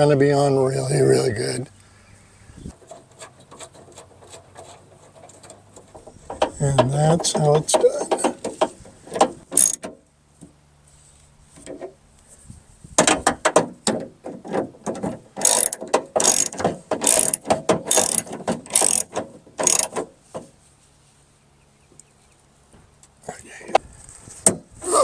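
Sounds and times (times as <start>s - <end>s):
ratchet wrench clicking: 9.6s - 9.8s, 15.4s - 20.0s.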